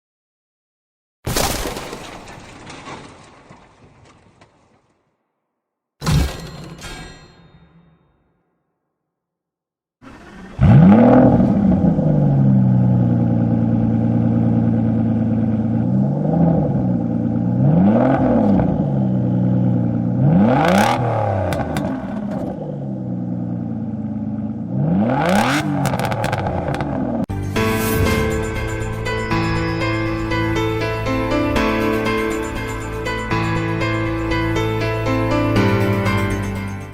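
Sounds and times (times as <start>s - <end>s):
car engine starting and revving: 10.0s - 27.3s.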